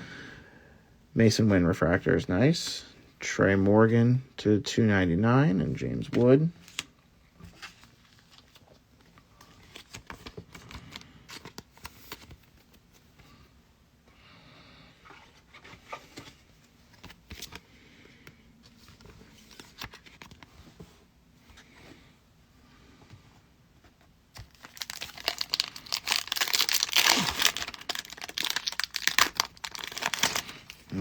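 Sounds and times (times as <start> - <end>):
trading cards clicking and rustling: 24.4 - 31.0.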